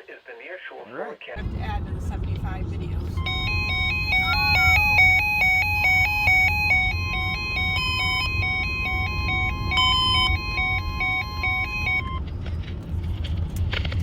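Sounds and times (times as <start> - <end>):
radio hum and hiss: 0.0 - 3.3
steady warning alarm tone: 1.4 - 12.6
alternating beeps: 1.5 - 12.7.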